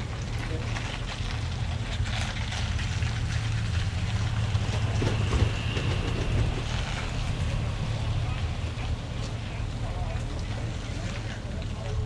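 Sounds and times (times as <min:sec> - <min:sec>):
wind buffeting microphone: 0:03.4 - 0:10.9.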